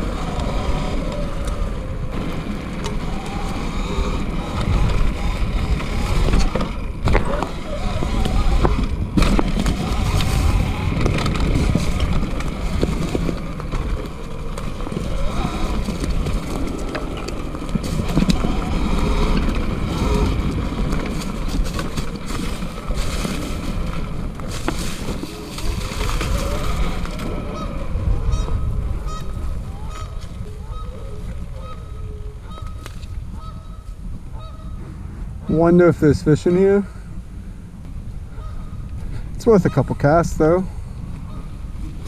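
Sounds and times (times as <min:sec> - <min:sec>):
e-bike riding rumble: 0:00.0 - 0:42.0
geese honking: 0:26.3 - 0:34.8, 0:38.3 - 0:38.9.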